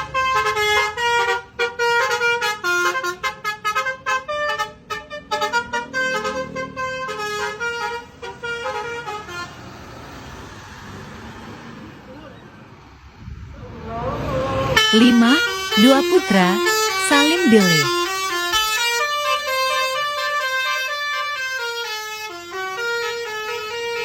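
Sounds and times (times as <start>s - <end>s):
multi-tone bus horn melody: 0.0s - 9.6s, 14.8s - 24.0s.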